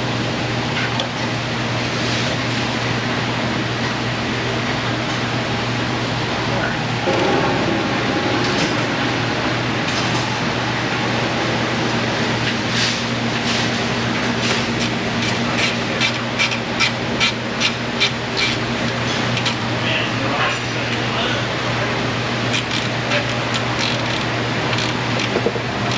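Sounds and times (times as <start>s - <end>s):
low mechanical hum: 0.0s - 25.9s
tools knocking: 25.2s - 25.6s.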